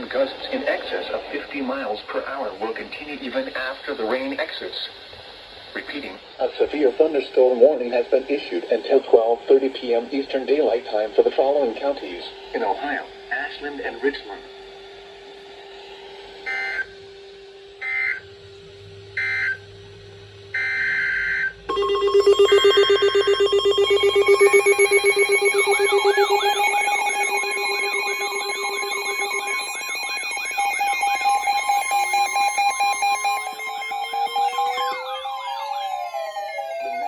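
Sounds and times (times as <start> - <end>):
warbling siren-like tones: 0.0 - 3.0, 6.8 - 18.2, 20.6 - 37.0
overlapping beeps and steady tones: 21.2 - 37.0.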